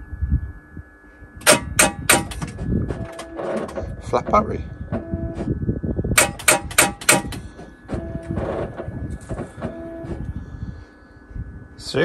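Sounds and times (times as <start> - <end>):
starter motor clattering and clicking: 1.4 - 5.1, 6.2 - 10.3.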